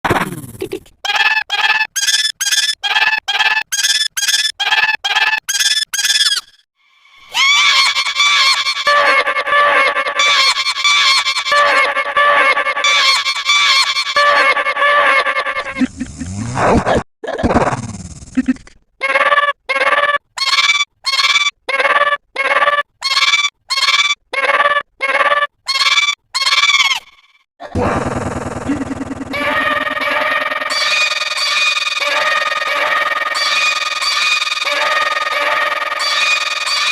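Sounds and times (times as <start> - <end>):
cartoon high-pitched squeaks: 1.0 - 6.6, 7.2 - 17.4, 19.0 - 27.3, 28.8 - 36.9
busy high-pitched sound: 1.1 - 6.6, 7.2 - 15.8, 29.3 - 36.9
cartoon honking call: 7.3 - 15.8, 29.3 - 36.9.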